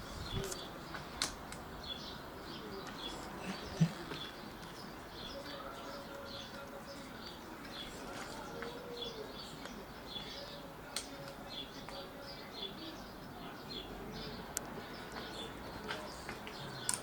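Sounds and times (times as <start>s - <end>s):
small birds chirping: 0.0s - 17.0s
sharp clicks: 16.3s - 17.0s.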